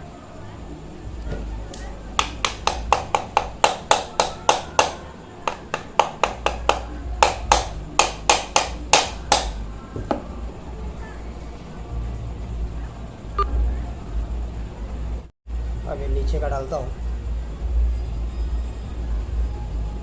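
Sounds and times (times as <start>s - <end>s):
sharp metal taps: 2.2s - 9.6s.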